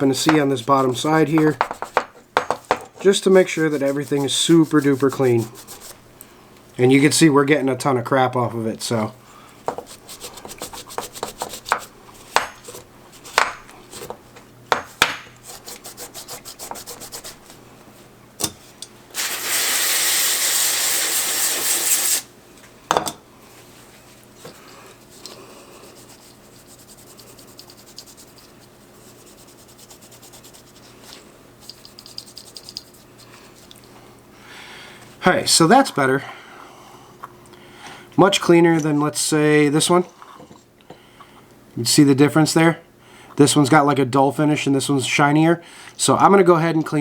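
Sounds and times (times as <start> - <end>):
cloth rubbing on plastic: 0.6 - 2.2, 3.0 - 6.0, 9.8 - 11.8, 15.4 - 17.5, 25.9 - 31.0
loud steady hiss: 19.1 - 22.3.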